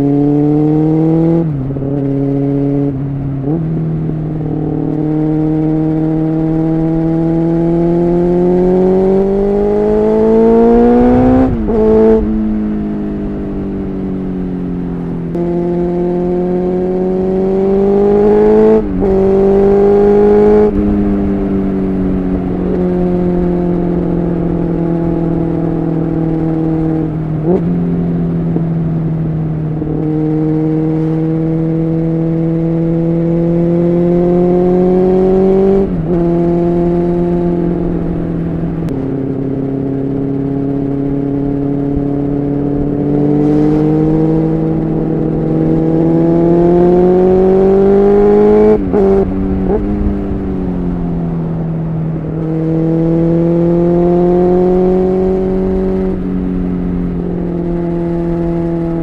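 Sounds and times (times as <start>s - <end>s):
motorcycle engine revving: 0.0s - 59.0s.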